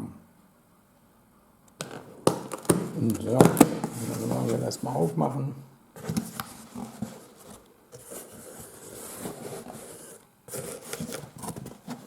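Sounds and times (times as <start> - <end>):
cardboard box being opened: 1.9 - 4.8, 6.0 - 12.0.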